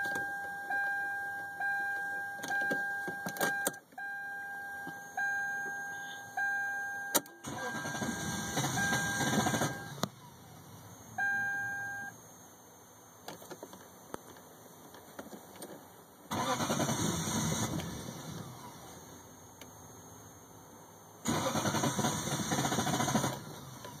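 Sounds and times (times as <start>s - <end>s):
steady warning chime: 0.0s - 10.0s, 11.0s - 12.2s
car engine cranking by starter: 7.1s - 10.8s, 16.3s - 19.3s, 21.2s - 24.0s.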